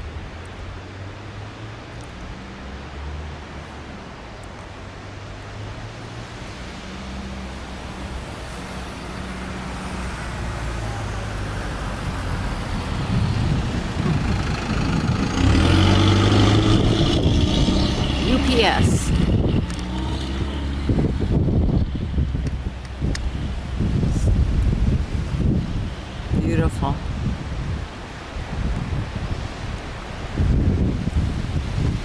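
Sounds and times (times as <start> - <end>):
wind noise: 0.0 - 32.0
diesel locomotives running under load: 10.7 - 21.0.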